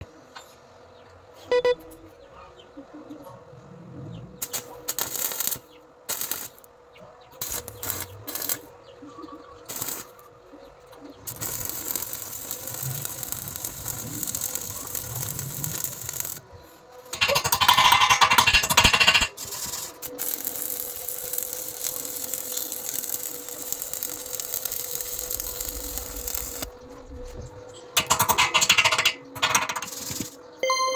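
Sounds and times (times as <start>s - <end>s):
arc welding crackling hiss: 4.4s - 6.7s, 7.4s - 8.7s, 9.6s - 30.4s.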